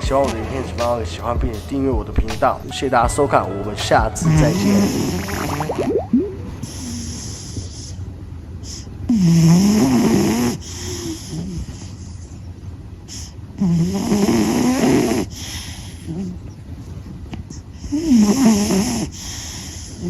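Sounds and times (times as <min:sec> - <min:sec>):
soft breaths: 0:06.5 - 0:13.5, 0:15.2 - 0:20.0
cat snoring: 0:08.7 - 0:12.2, 0:13.1 - 0:16.4, 0:17.8 - 0:20.0.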